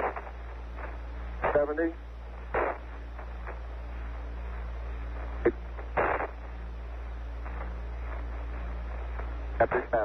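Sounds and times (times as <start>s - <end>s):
bursts of static: 0.0s - 10.0s
radio hiss: 0.0s - 10.0s
steady hum: 0.0s - 10.0s.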